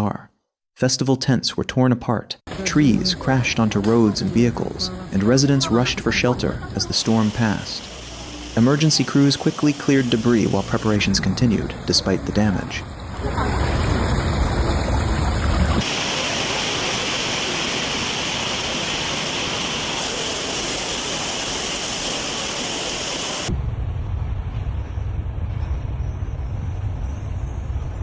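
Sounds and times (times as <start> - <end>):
rain hiss: 2.5 - 23.5
low wind rumble: 23.5 - 28.0.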